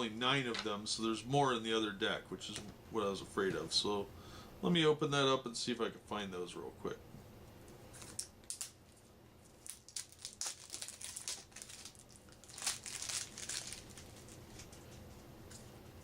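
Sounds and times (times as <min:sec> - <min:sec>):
plastic wrap crinkling: 0:08.0 - 0:15.1.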